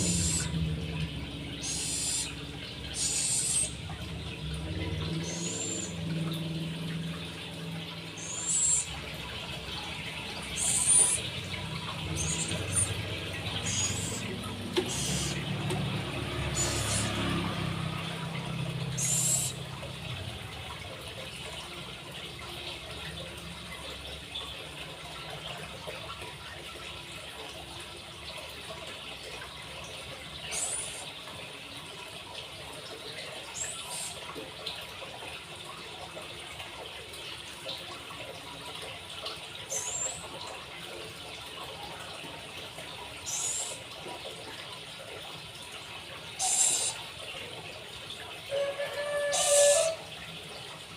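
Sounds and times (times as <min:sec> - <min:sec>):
owl squeaking: 0:00.0 - 0:00.5, 0:01.6 - 0:02.3, 0:03.0 - 0:03.7, 0:10.6 - 0:11.2, 0:19.0 - 0:19.6, 0:49.3 - 0:50.0.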